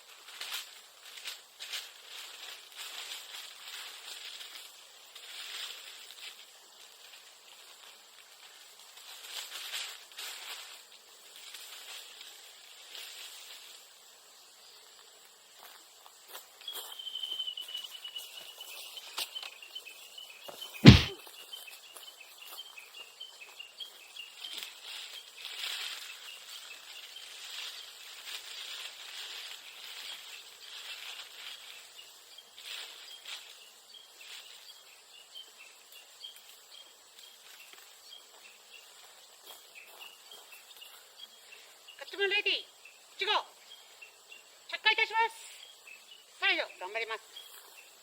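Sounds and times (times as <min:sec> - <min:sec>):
insects chirring: 0:00.0 - 0:48.0
loud thump: 0:20.8 - 0:21.2.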